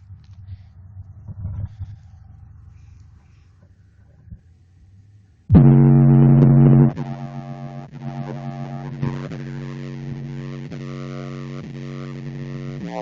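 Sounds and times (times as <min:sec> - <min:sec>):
electronic music with heavy bass: 0:05.5 - 0:13.0.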